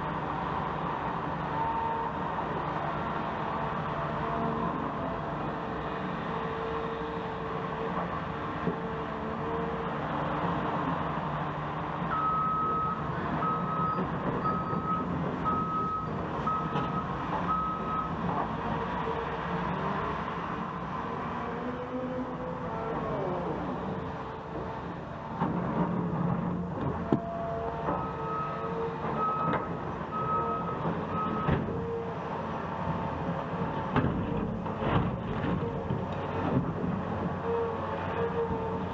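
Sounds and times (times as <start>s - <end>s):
heavy machinery rumble: 0.0s - 38.9s
heavy vehicle engine running: 0.0s - 38.9s
reversing alarm beeping: 12.1s - 18.2s, 27.1s - 31.6s.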